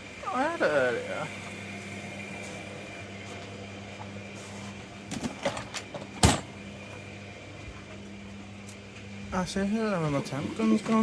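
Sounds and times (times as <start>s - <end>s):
steady low hum: 0.0s - 11.0s
objects handled and knocked about: 5.0s - 6.6s.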